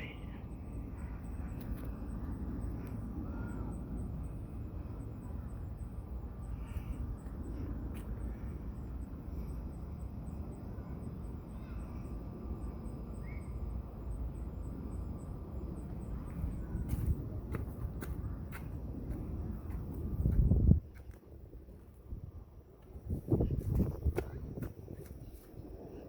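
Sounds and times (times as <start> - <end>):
faint high chirping: 0.0 - 17.2
steady low rumble: 0.0 - 26.0.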